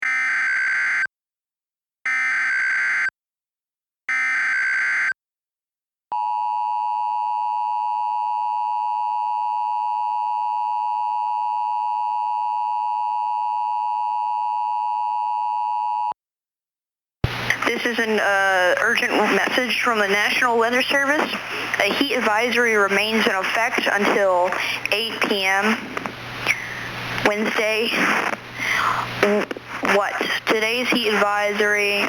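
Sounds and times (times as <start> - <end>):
steady attention tone: 17.2 - 32.0.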